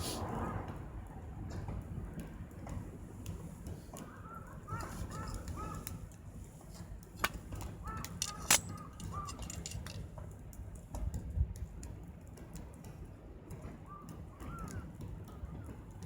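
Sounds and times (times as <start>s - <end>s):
sharp clicks and knocks: 7.2s - 10.0s.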